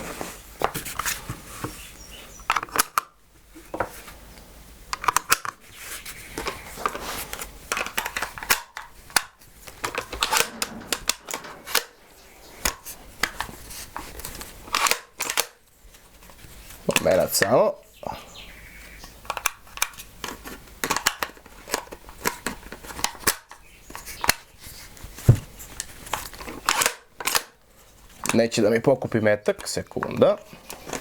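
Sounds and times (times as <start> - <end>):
rifle bolt working: 9.8 - 13.4.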